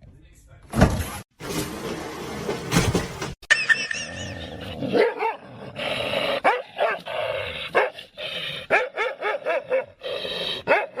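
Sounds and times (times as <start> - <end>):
dog barking and yipping: 4.9 - 5.4, 6.4 - 7.1, 8.7 - 10.0, 10.6 - 11.0.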